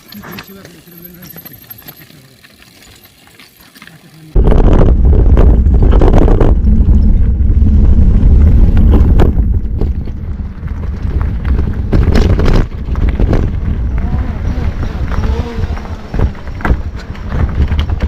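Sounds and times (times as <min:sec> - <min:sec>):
wind buffeting microphone: 0:04.4 - 0:18.0
bike knocks and rattles: 0:08.7 - 0:18.0.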